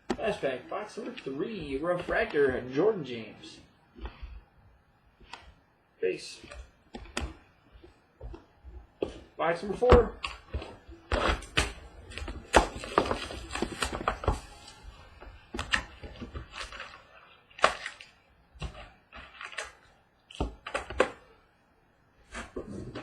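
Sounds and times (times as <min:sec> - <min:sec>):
card packs tapping and knocking: 0:06.4 - 0:21.3
wrapping crinkling and tearing: 0:10.2 - 0:19.9.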